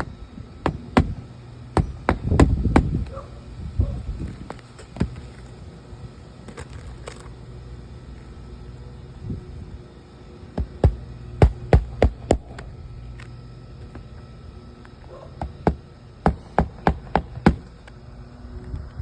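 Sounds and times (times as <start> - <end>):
hammer striking nails: 0.0 - 1.2, 1.8 - 3.1, 10.6 - 12.6, 15.4 - 17.8.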